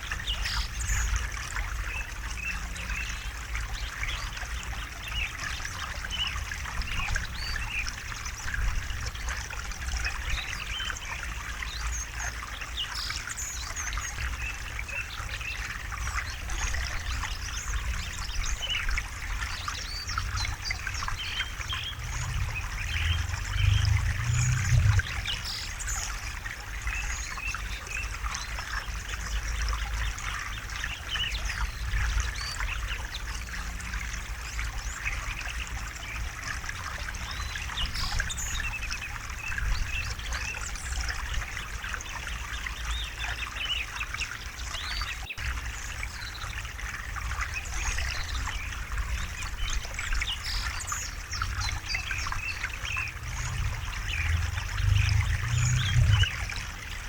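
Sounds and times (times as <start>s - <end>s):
stream splashing over stones: 0.0s - 57.0s
low rumble: 20.2s - 26.2s, 51.5s - 57.0s.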